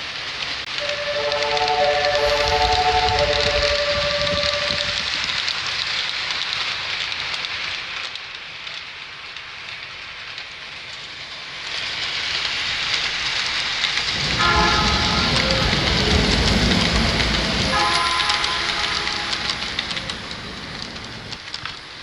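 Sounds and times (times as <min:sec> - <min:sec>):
train rushing on rails: 0:00.0 - 0:22.0
train horn: 0:00.7 - 0:05.2, 0:14.1 - 0:20.4.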